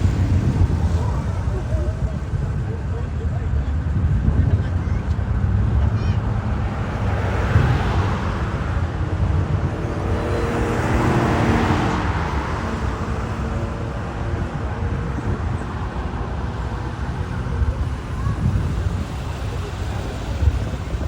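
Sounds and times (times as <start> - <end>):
road traffic: 0.0 - 21.0
vehicle passing: 5.4 - 21.0.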